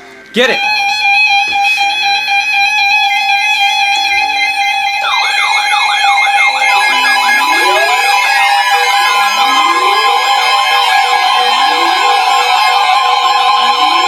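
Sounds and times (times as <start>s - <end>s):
warbling siren-style alarm tones: 0.8s - 14.0s
rising siren wind-up: 2.2s - 14.0s
steady alert tones: 4.2s - 14.0s.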